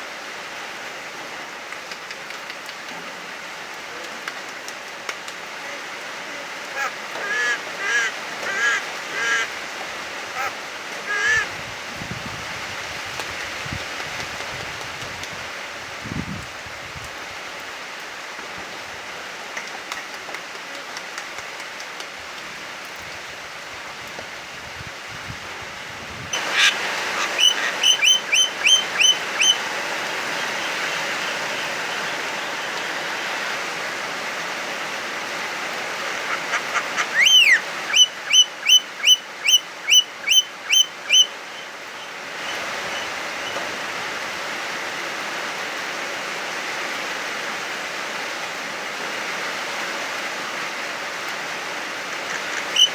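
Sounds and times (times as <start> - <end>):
heavy rain hissing: 0.0 - 52.9
myna calling loudly: 6.7 - 9.5, 10.3 - 11.5.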